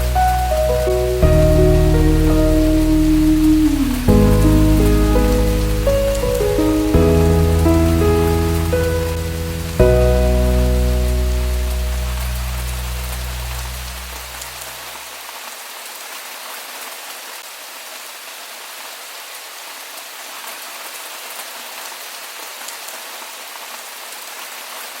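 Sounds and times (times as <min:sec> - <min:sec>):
low musical chord: 0:00.0 - 0:14.4
steady rain falling: 0:00.0 - 0:25.0.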